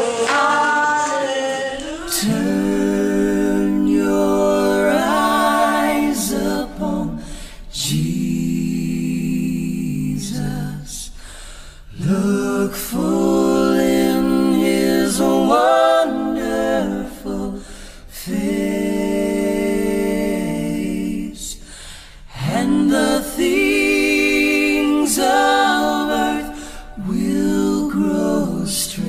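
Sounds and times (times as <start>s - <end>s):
breaths: 7.2s - 7.7s, 11.1s - 12.0s, 17.6s - 18.2s, 21.6s - 22.4s, 26.5s - 27.0s.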